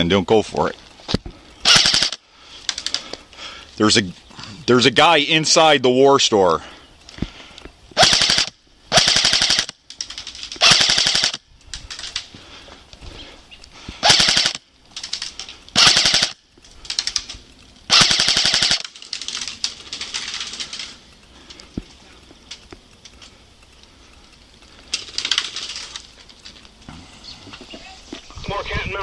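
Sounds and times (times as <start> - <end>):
airsoft gun firing bursts: 1.6 - 2.2, 8.0 - 9.8, 10.6 - 11.4, 14.0 - 14.7, 15.7 - 16.4, 17.9 - 19.0
faint rattling bursts: 6.6 - 26.9.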